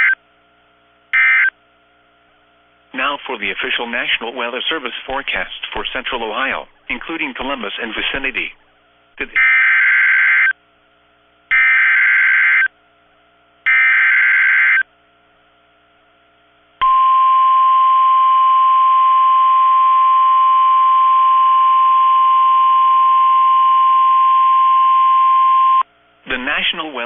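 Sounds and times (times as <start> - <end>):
steady warning alarm tone: 1.2 - 1.5, 9.3 - 10.6, 11.5 - 12.7, 13.7 - 14.9.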